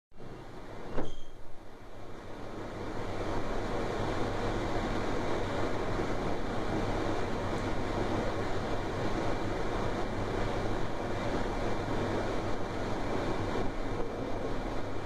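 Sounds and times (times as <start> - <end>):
steady rushing train noise: 1.5 - 15.0.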